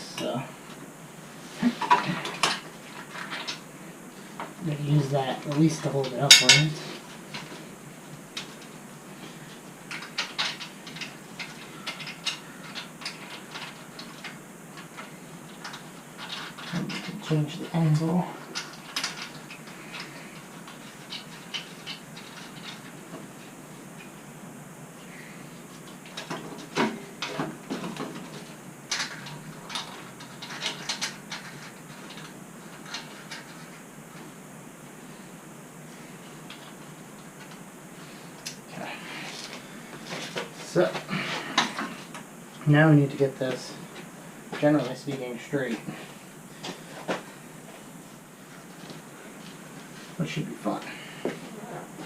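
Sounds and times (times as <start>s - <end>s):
metal frame parts clanking: 5.0s - 7.5s
metal parts clicking and clinking: 5.5s - 7.5s, 9.9s - 17.2s, 18.5s - 22.9s, 26.0s - 33.8s.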